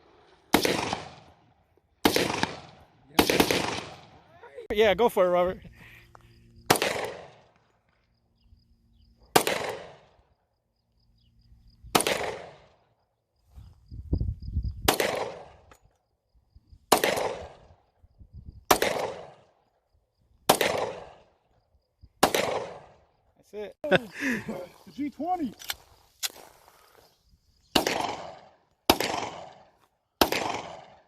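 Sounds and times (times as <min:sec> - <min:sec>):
gunshots with echo: 0:00.5 - 0:01.4, 0:02.0 - 0:04.2, 0:06.7 - 0:07.6, 0:09.3 - 0:10.1, 0:11.9 - 0:12.7, 0:14.9 - 0:15.6, 0:16.9 - 0:17.6, 0:18.7 - 0:19.5, 0:20.5 - 0:21.3, 0:22.2 - 0:23.0, 0:27.8 - 0:31.0.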